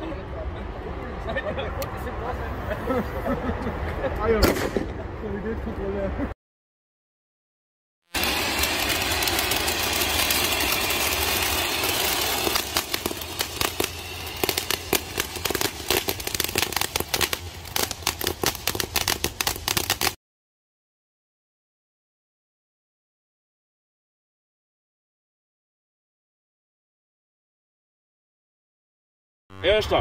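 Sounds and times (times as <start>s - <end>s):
firework crackling pops: 4.4s - 4.9s, 8.1s - 20.2s
firework hissing: 8.1s - 20.2s.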